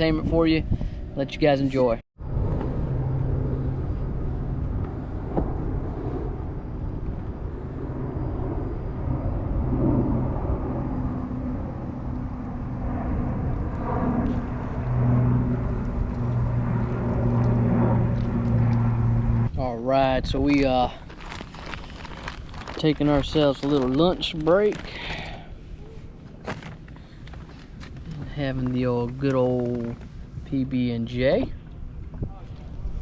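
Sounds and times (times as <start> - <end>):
distant engine droning: 0.0 - 19.6
outdoor background noise: 0.0 - 33.0.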